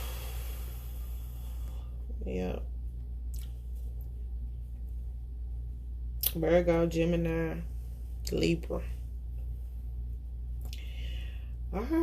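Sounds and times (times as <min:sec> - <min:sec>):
steady low hum: 0:00.0 - 0:12.0
soft rustle: 0:02.8 - 0:06.0, 0:07.6 - 0:10.6.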